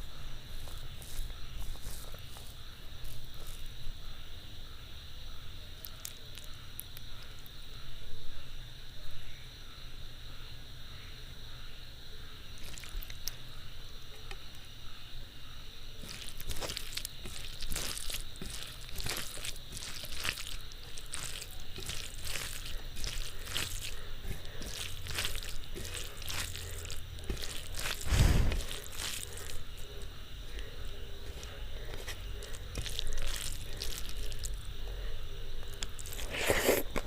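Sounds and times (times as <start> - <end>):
wet squishing and smacking eating: 0.0 - 3.7, 12.6 - 13.4, 16.0 - 37.0.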